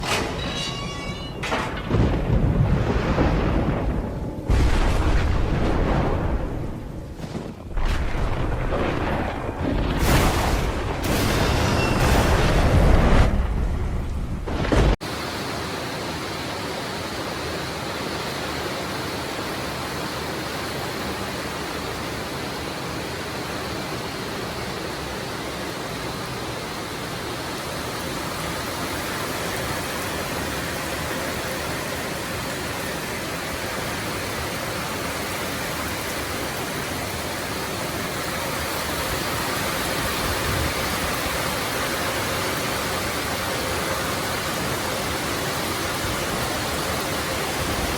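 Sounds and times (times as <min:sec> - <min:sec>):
heavy rain pouring: 0:00.0 - 0:47.9
low rumble: 0:01.4 - 0:15.0.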